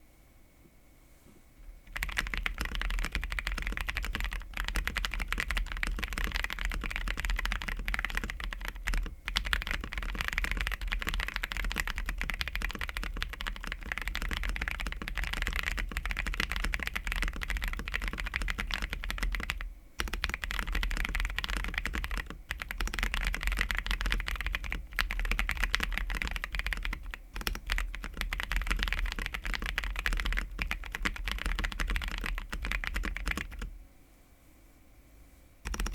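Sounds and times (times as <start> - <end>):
mechanical keyboard typing: 1.9 - 33.7, 35.6 - 35.9.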